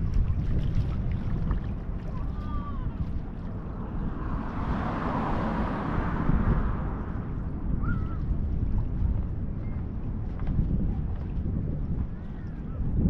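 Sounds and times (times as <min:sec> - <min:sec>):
wash of water: 0:00.0 - 0:09.6
wind buffeting microphone: 0:00.0 - 0:13.0.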